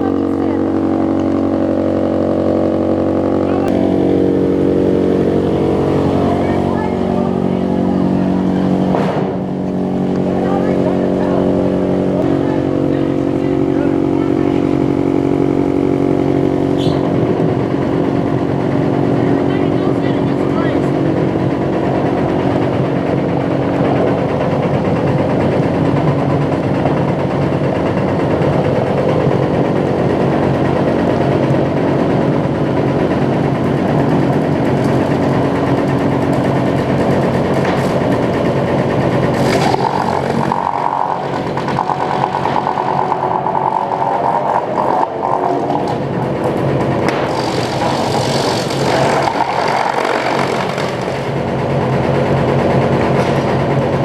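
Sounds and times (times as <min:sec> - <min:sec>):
high whine with fast rattle: 0:00.0 - 0:54.0
sawmill machinery humming: 0:00.0 - 0:54.0.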